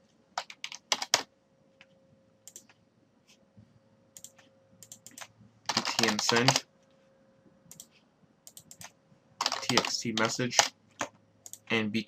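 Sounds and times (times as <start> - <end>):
computer keyboard typing: 0.4 - 1.3, 2.4 - 2.8, 4.2 - 6.6, 7.7 - 11.8.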